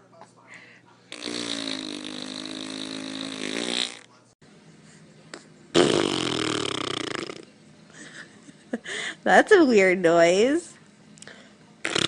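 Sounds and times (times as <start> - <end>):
farts: 1.1 - 4.1, 5.7 - 7.5.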